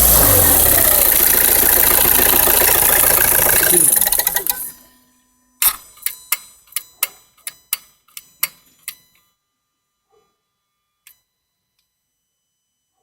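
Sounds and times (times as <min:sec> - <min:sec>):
turbocharger mechanism clicking: 0:00.0 - 0:04.8.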